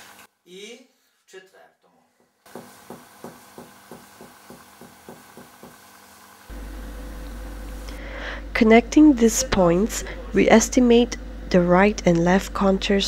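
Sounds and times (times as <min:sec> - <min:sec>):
low steady hum: 0:06.5 - 0:13.0.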